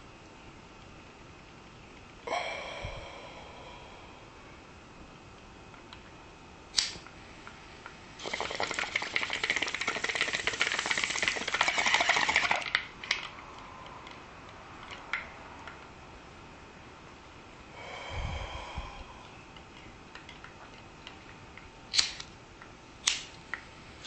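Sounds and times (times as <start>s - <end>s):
lighter striking: 6.7s - 7.0s
sharp click: 6.7s - 7.1s, 21.9s - 22.3s, 23.0s - 23.4s.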